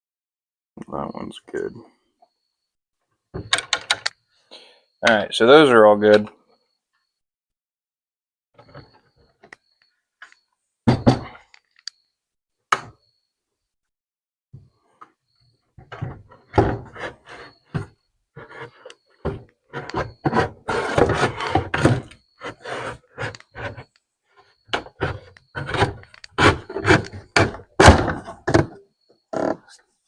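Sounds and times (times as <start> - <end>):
knocks and thunks on workbench: 3.4 - 3.9, 10.9 - 11.4, 15.8 - 17.1, 24.7 - 28.8.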